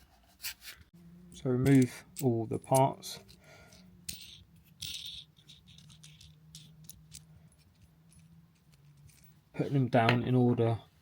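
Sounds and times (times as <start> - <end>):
clicks and clinks of small parts: 1.3 - 9.4.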